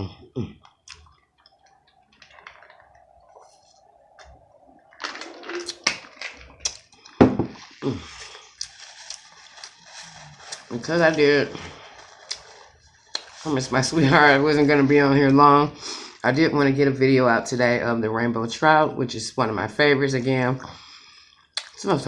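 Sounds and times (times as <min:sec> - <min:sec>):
wet chewing: 0:11.6 - 0:13.5
lip smacks: 0:21.6 - 0:21.8.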